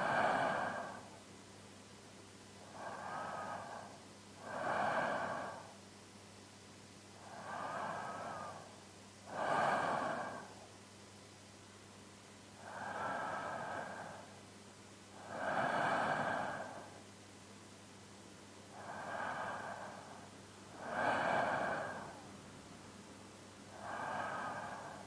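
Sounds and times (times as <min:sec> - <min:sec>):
man breathing in sleep: 0:00.0 - 0:01.2, 0:02.6 - 0:05.8, 0:07.2 - 0:10.7, 0:12.6 - 0:14.4, 0:15.2 - 0:17.1, 0:18.7 - 0:22.4, 0:23.7 - 0:25.0.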